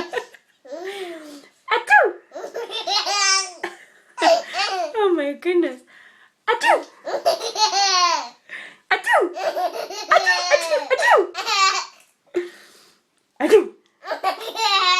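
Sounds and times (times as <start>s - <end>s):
baby laughing: 2.3s - 5.0s, 6.8s - 8.4s, 9.3s - 12.0s, 14.0s - 14.9s.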